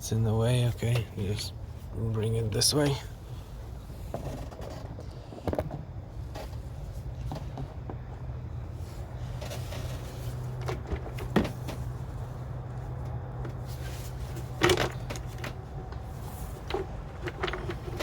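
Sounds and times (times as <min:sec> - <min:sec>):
steady low hum: 0:00.0 - 0:18.0
engine parts knocking and clattering: 0:04.0 - 0:08.6, 0:09.2 - 0:18.0.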